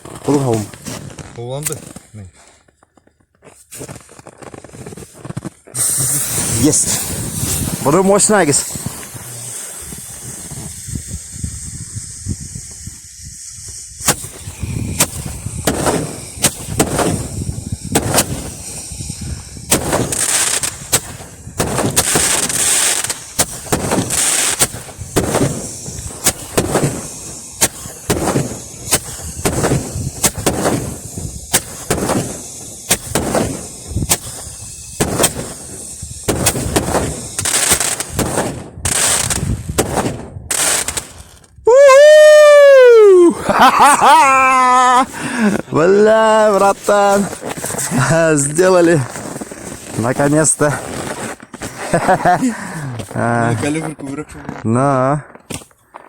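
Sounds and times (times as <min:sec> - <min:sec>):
fireworks crackling: 0:00.0 - 0:02.6, 0:03.5 - 0:56.0
fireworks bangs: 0:04.5 - 0:54.6.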